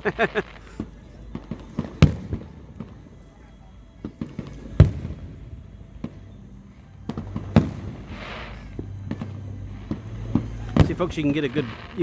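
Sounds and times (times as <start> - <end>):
fireworks bangs: 0.0 - 0.6
firework crackling hiss: 0.0 - 3.4, 6.0 - 12.0
small firework pops: 0.4 - 3.3, 7.1 - 12.0.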